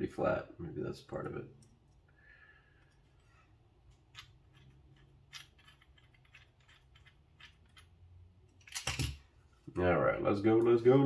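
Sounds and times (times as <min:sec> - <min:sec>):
metal knife parts clicking: 0:08.6 - 0:09.2.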